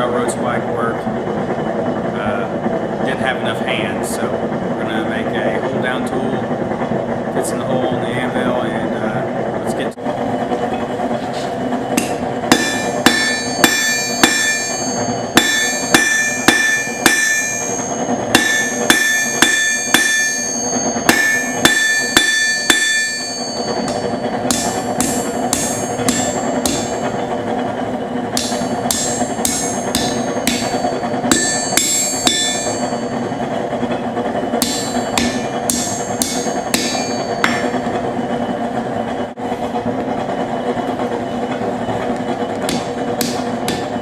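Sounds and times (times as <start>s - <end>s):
steady background hum: 0.0s - 44.0s
hammer striking metal on anvil: 12.0s - 27.2s, 28.3s - 38.1s, 42.7s - 44.0s.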